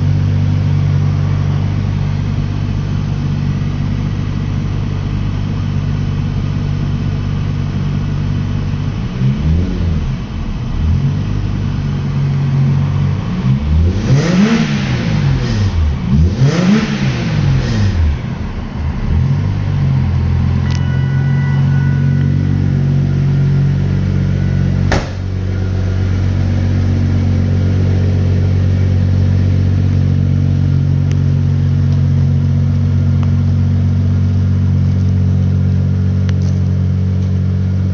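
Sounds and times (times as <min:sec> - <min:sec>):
car engine idling and revving: 0:00.0 - 0:37.9
sharp click: 0:24.9 - 0:25.2.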